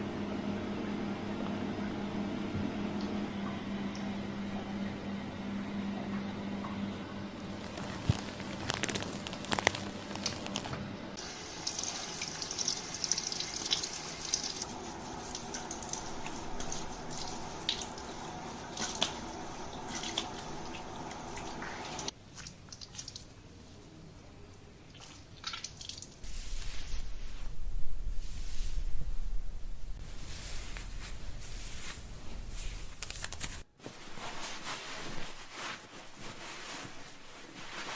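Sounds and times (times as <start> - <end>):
water spraying into sink: 11.2 - 22.1.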